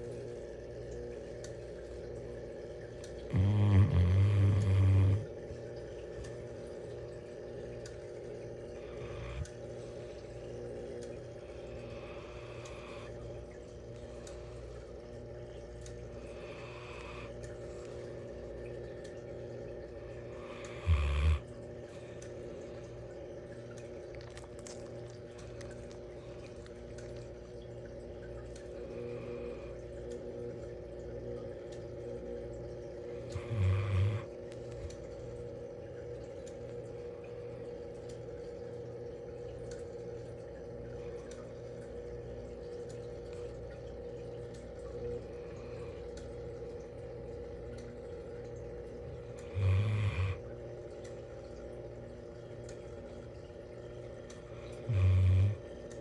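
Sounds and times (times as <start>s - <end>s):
steady background hum: 0.0s - 56.0s
dog snoring: 3.2s - 5.6s, 8.8s - 9.7s, 11.7s - 13.2s, 16.2s - 17.5s, 20.2s - 21.5s, 33.2s - 34.9s, 49.0s - 50.4s, 54.5s - 55.6s.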